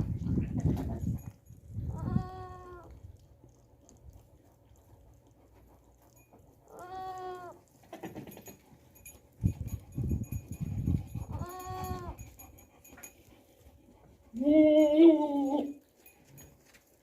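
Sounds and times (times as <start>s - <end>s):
goat bleating: 1.9s - 2.9s, 6.7s - 8.4s, 11.3s - 12.2s.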